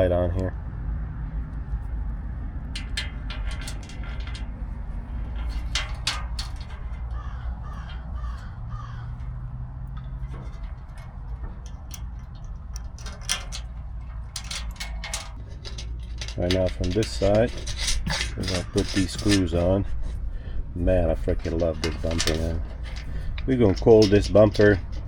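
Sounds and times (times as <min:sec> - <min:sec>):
low rumble: 0:00.0 - 0:25.0
small hardware clicking and clinking: 0:02.7 - 0:25.0
bird calling harsh notes: 0:07.1 - 0:09.6.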